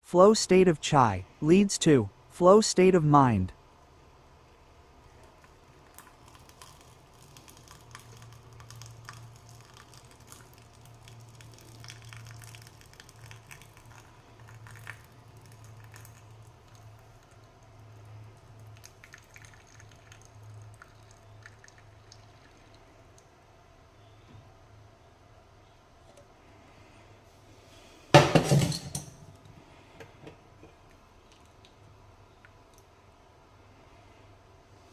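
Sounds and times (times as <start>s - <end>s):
low steady hum: 0.0s - 34.9s
tea bubbling in a pan: 4.7s - 23.5s.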